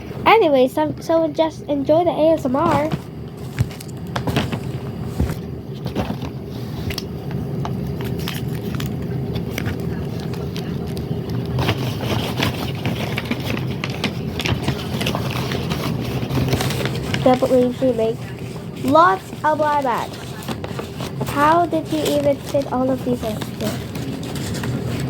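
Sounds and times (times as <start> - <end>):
steady low hum: 0.0 - 25.0
plastic toys clicking and scraping: 9.5 - 25.0.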